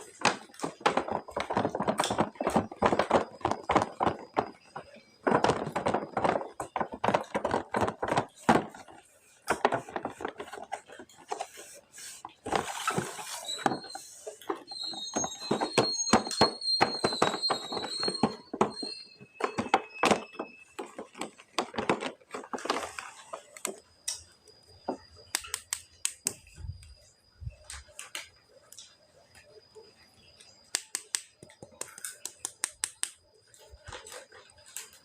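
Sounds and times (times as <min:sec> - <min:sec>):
plastic packaging clicks and rustles: 0:00.0 - 0:11.6
high wavering squeak: 0:12.0 - 0:20.8.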